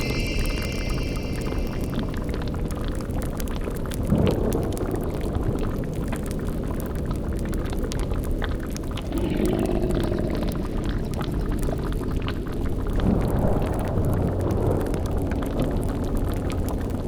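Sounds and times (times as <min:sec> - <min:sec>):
cauldron bubbling: 0:00.0 - 0:02.4.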